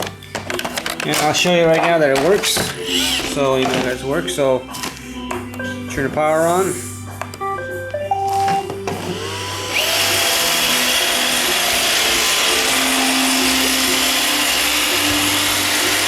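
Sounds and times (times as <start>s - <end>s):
vacuum brushes whirring: 0.0s - 16.0s
robot vacuum motors whirring: 1.0s - 3.9s, 8.5s - 16.0s.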